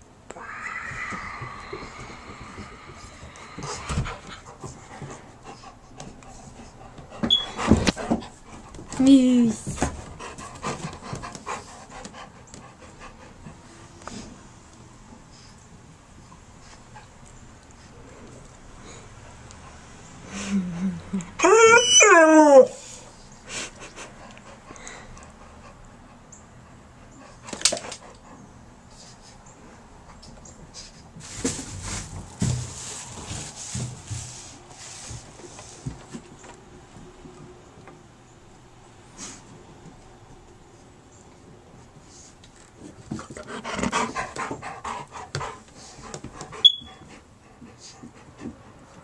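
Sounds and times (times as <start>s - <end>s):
dog panting: 2.4s - 14.2s, 43.1s - 49.0s.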